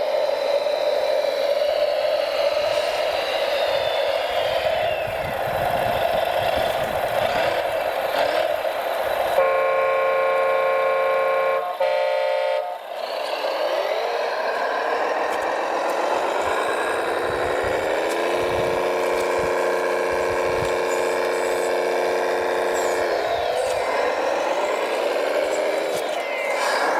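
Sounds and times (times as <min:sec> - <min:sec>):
electric motor whining: 0:00.9 - 0:26.9
truck horn blasts: 0:09.4 - 0:13.5.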